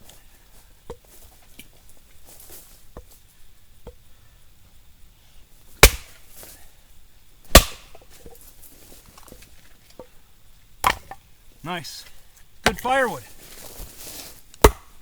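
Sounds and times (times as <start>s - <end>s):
axe blows splitting wood: 5.8s - 6.1s, 7.6s - 7.8s.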